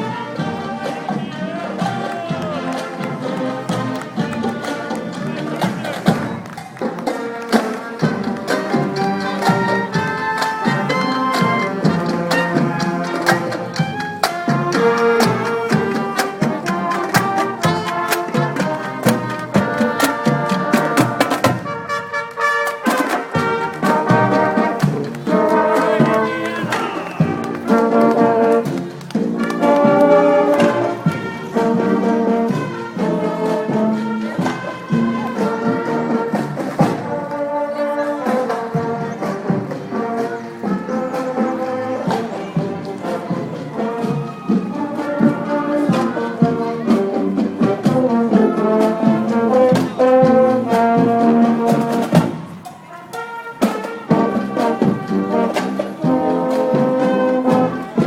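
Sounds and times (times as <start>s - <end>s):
steady drum beat: 0.0s - 21.9s, 22.8s - 37.2s
brass melody: 0.0s - 58.0s.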